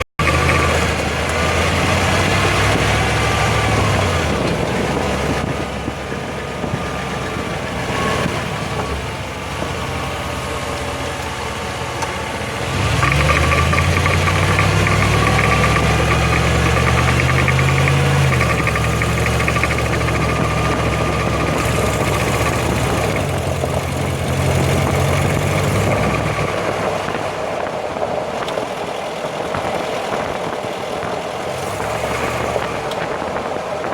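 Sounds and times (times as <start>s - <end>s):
differential whining: 0.0s - 28.8s
engine accelerating: 0.0s - 33.9s
road noise: 0.0s - 33.9s
fast rasp: 13.0s - 23.6s.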